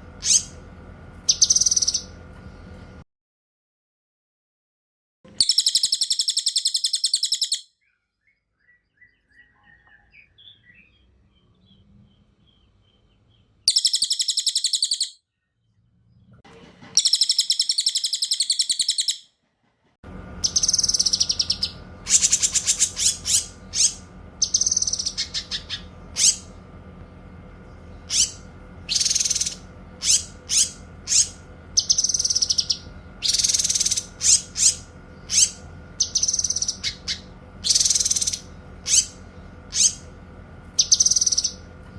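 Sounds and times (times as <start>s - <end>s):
steady hum: 0.0s - 3.0s, 20.0s - 41.9s
bird chirps and whistles: 0.2s - 0.6s, 1.3s - 2.1s, 5.4s - 10.9s, 13.7s - 15.2s, 17.0s - 19.3s, 20.4s - 26.5s, 28.1s - 40.1s, 40.8s - 41.6s
bird rolling trills: 20.4s - 26.7s, 27.8s - 41.7s.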